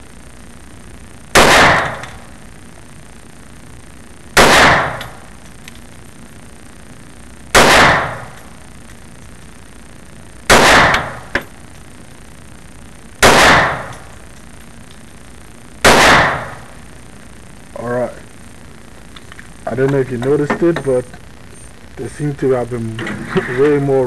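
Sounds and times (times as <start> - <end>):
pistol shots: 1.3 - 2.2, 4.4 - 5.3, 7.5 - 8.6, 10.5 - 11.4, 13.2 - 14.1, 15.8 - 16.7.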